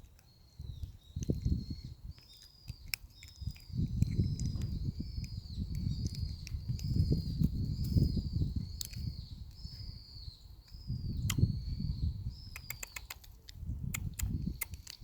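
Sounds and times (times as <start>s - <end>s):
puppy grinding teeth: 1.2s - 7.6s, 12.6s - 15.0s.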